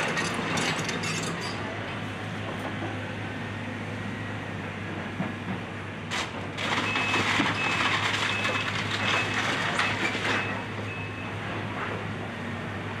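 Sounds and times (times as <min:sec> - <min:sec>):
excavator diesel engine running: 0:00.0 - 0:13.0
reversing alarm beeping: 0:06.7 - 0:11.4.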